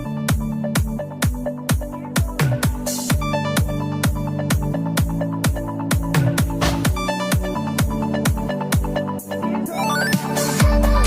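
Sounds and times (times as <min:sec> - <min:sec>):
kick drum beat: 0:00.0 - 0:09.0
electronic dance music: 0:00.0 - 0:11.0.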